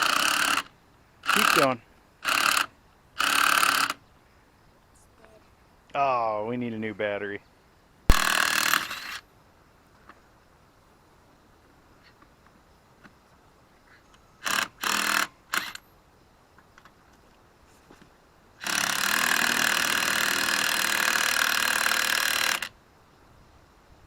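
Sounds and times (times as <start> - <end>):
impact wrench hammering: 8.1 - 9.2.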